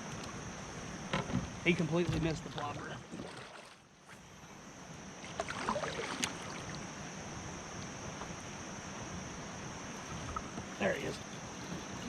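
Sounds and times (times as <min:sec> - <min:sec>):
river water flowing: 0:01.7 - 0:04.0, 0:05.0 - 0:10.8.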